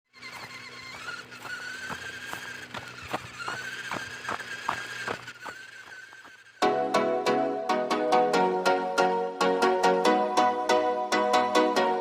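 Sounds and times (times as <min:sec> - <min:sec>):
small electric motor whining: 0:00.1 - 0:06.8.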